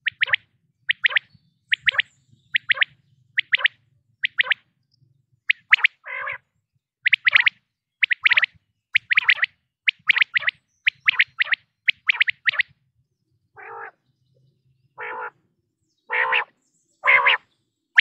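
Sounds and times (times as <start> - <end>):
quail whistled calls: 0.0 - 4.7, 5.5 - 6.4, 7.0 - 12.8, 13.6 - 14.0, 15.0 - 15.4, 16.1 - 17.4.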